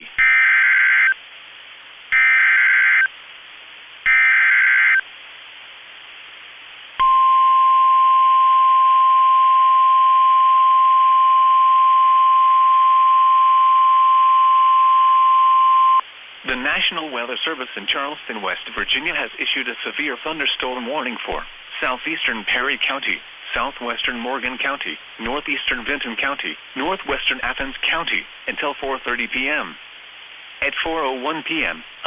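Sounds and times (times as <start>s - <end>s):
steady warning alarm tone: 0.2s - 1.2s, 2.1s - 3.1s, 4.1s - 5.0s.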